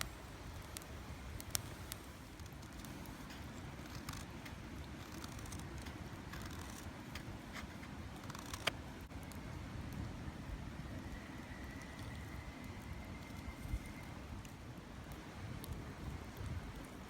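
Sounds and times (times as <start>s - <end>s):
wood fire crackling: 0.0s - 17.0s.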